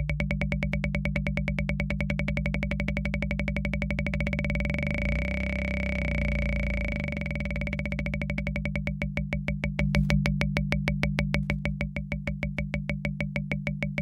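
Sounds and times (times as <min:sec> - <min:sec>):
low drone: 0:04.4 - 0:08.3.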